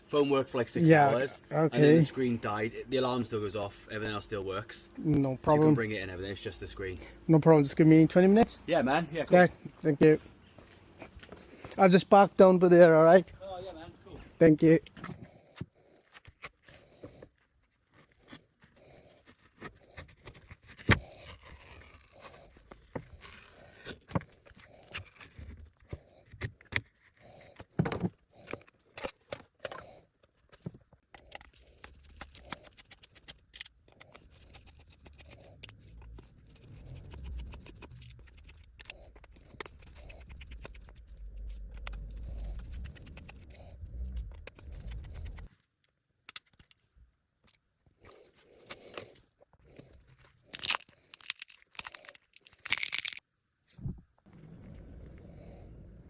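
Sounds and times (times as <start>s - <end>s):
low rumble: 39.3s - 45.5s, 53.8s - 56.0s.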